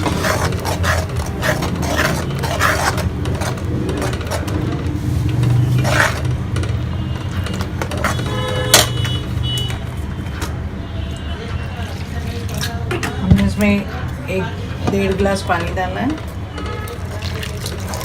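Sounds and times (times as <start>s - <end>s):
metal spoon scraping a pan: 0.0s - 6.5s
frying: 16.9s - 18.0s.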